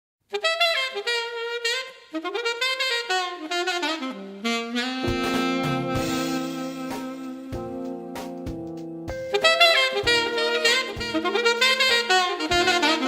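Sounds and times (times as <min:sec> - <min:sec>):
solo melody line: 0:00.4 - 0:13.0
band with steady drum hits: 0:05.0 - 0:11.6.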